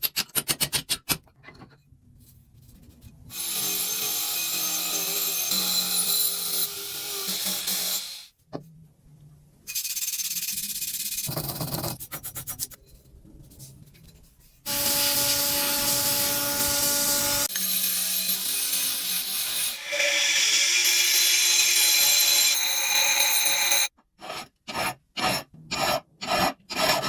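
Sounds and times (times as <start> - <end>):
hand tool scraping metal: 21.2 - 27.0.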